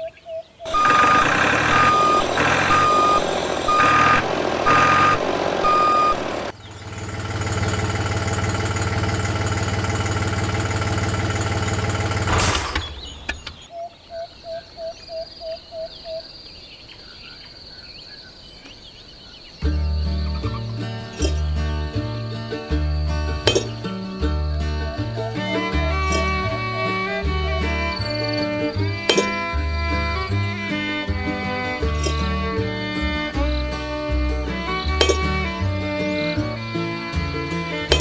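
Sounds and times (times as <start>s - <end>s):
vehicle reversing beeper: 0.7s - 6.6s, 19.8s - 36.1s
truck engine running: 0.7s - 13.3s, 19.7s - 38.0s.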